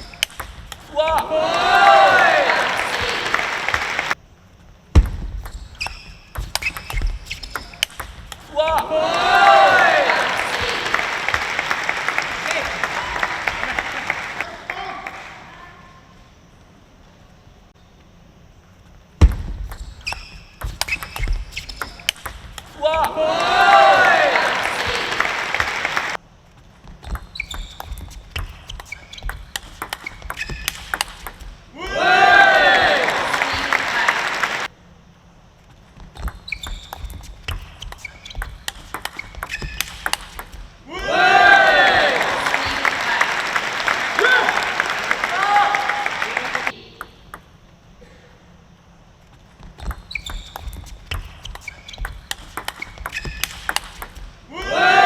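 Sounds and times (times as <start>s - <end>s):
shoe squeaks on floor: 5.4s - 8.0s, 19.7s - 22.3s, 26.6s - 31.0s, 35.7s - 40.5s, 49.3s - 54.3s
table tennis ball clicking: 19.7s - 22.8s, 29.2s - 31.5s, 37.8s - 40.6s, 49.9s - 54.3s.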